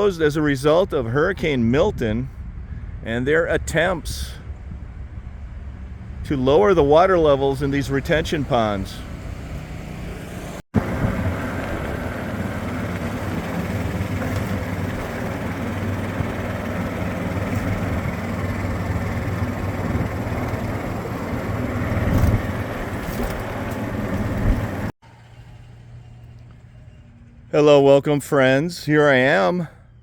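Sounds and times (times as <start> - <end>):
vehicle engine hum: 0.0 - 30.0
rushing road noise: 2.4 - 25.0.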